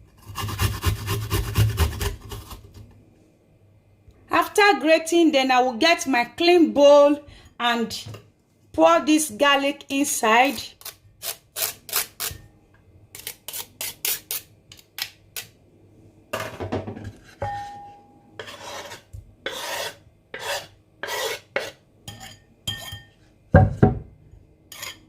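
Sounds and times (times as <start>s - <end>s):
garlic scraped from a grater: 0.1s - 2.8s, 13.2s - 14.5s, 18.4s - 21.8s.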